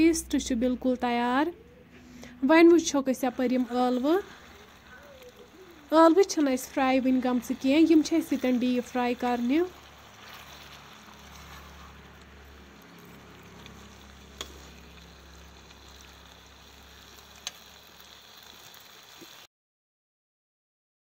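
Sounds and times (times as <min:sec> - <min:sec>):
potatoes sizzling in hot oil: 0:02.7 - 0:19.5.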